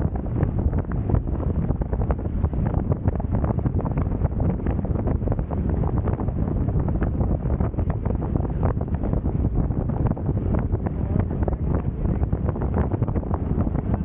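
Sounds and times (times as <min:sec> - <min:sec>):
strong wind buffeting microphone: 0:00.0 - 0:14.0
water rushing past hulls: 0:00.0 - 0:14.0.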